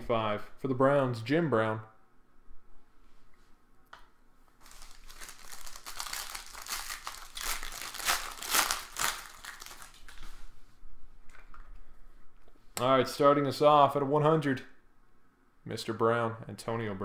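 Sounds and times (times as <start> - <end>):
plastic wrapping crinkling: 4.6 - 10.4.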